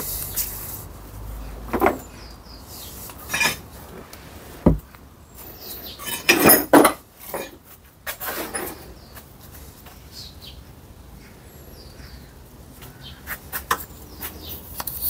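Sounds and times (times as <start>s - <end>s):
metal parts clinking on workbench: 3.3s - 3.6s, 5.9s - 7.5s
heavy thump: 4.6s - 4.9s.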